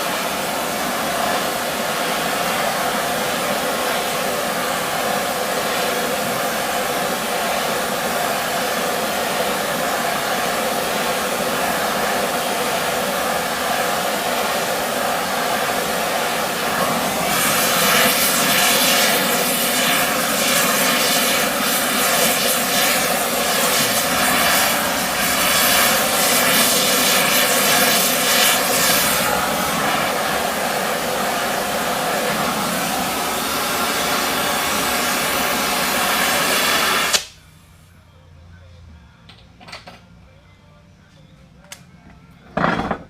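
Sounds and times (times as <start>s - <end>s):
machine hum: 4.4s - 39.2s
crackling welding arc: 17.2s - 29.6s.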